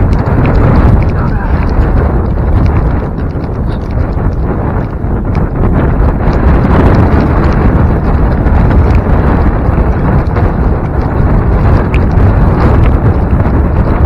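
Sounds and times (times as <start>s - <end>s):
wind buffeting microphone: 0.0s - 14.0s.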